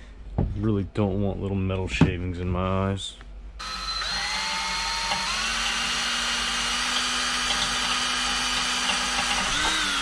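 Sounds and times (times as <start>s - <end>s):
power drill boring through metal: 3.6s - 10.0s.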